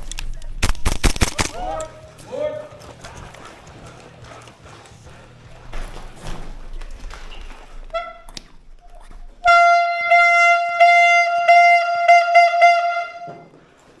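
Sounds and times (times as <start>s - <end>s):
brassy horn blasts: 7.7s - 13.6s.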